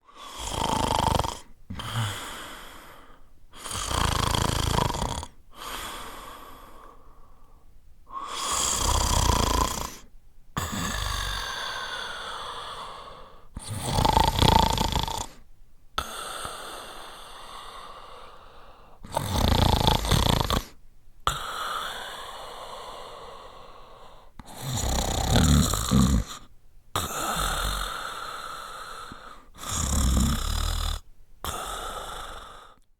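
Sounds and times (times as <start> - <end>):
man snoring: 0.0 - 7.0, 8.1 - 15.4, 16.0 - 32.8
breathy exhale: 5.5 - 9.0, 25.7 - 32.9.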